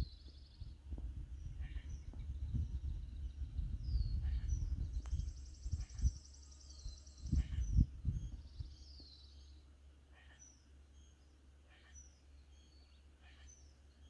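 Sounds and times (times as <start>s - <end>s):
low rumble with soft thumps: 0.0s - 6.2s
small birds calling: 0.0s - 9.6s.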